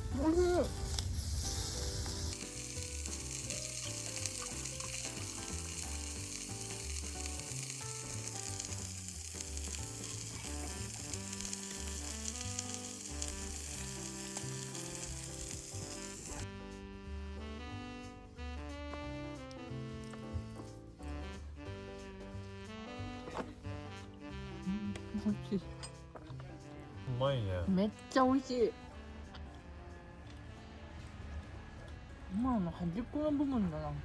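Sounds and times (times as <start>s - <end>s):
food sizzling in a pan: 0.0s - 16.4s
background music: 0.0s - 34.0s.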